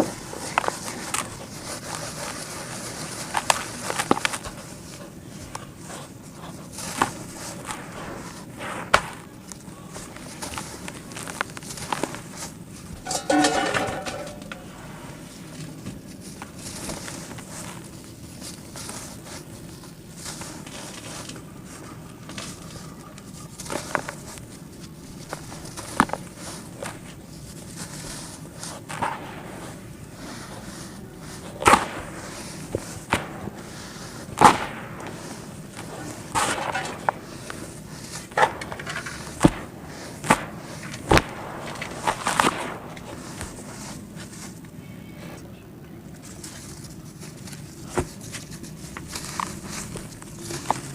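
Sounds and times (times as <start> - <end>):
sharp cracks and snaps: 31.6 - 33.5, 34.3 - 37.6, 38.2 - 43.5.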